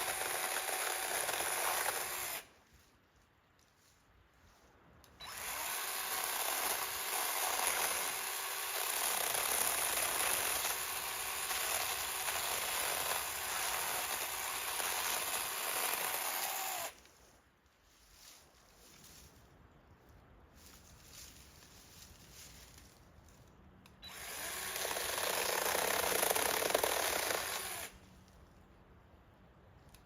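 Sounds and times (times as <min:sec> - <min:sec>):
power tool running: 0:05.2 - 0:16.9, 0:24.0 - 0:27.9.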